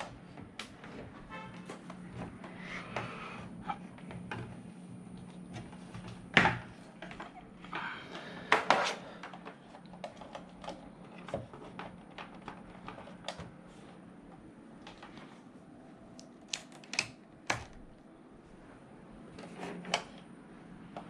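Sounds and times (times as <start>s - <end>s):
clicks and knocks of handling: 3.7s - 13.6s, 16.2s - 17.8s.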